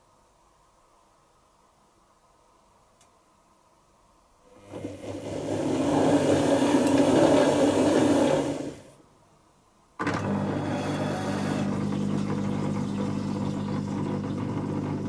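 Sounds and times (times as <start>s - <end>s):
washing machine motor hum: 4.5s - 9.0s, 10.0s - 15.0s.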